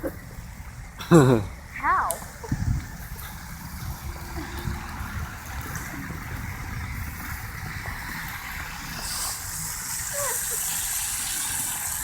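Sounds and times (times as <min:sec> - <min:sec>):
car engines rumbling: 0:00.0 - 0:12.0
tyre hiss on snowy road: 0:03.3 - 0:12.0.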